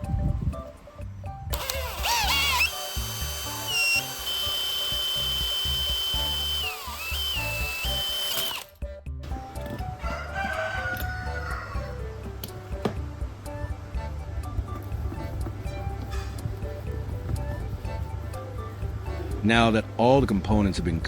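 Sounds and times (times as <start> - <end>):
power tool motor whine: 1.5 - 8.7
background music with beat: 8.0 - 21.0.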